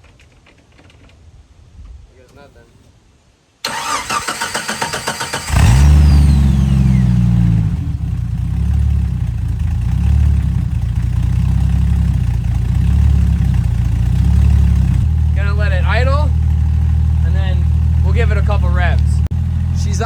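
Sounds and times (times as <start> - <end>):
car engine starting and idling: 3.6 - 20.0
starter motor whine: 3.7 - 9.8.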